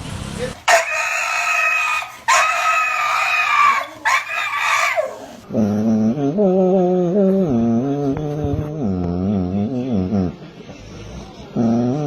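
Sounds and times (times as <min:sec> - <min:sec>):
high-pitched crowing animal calls: 0:00.6 - 0:05.4.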